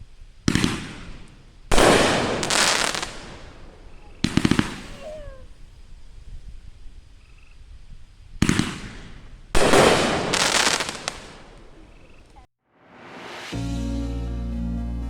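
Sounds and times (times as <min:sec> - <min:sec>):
firework report: 0:00.0 - 0:06.1, 0:07.7 - 0:13.6
firework volley with crackling: 0:00.0 - 0:13.5.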